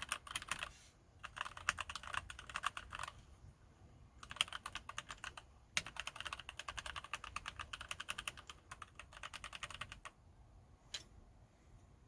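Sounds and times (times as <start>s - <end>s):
typing on mechanical keyboard: 0.0s - 3.2s, 4.2s - 10.2s.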